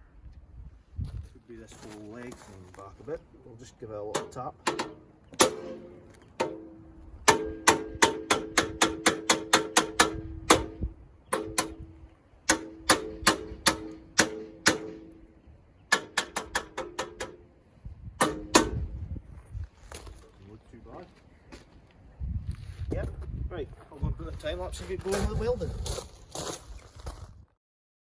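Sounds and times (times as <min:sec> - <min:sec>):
hammer striking steel rail: 0:04.1 - 0:15.3, 0:15.9 - 0:17.5, 0:18.2 - 0:18.9.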